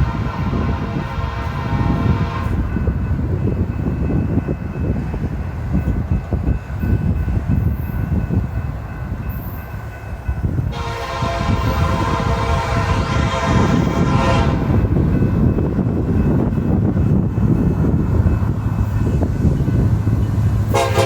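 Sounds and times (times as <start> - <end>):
train air horn chord: 0.0 - 2.7, 10.7 - 14.8, 20.7 - 21.0
diesel locomotive rumbling: 0.0 - 21.0.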